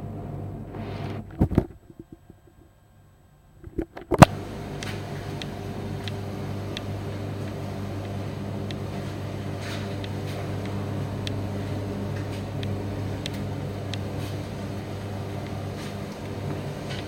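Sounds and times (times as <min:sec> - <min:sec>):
tumble dryer humming: 0:04.0 - 0:17.0.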